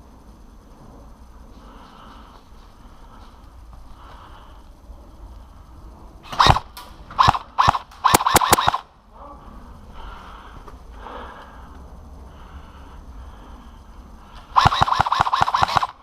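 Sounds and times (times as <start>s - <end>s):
airsoft gun shots: 6.3s - 8.9s, 14.6s - 16.0s.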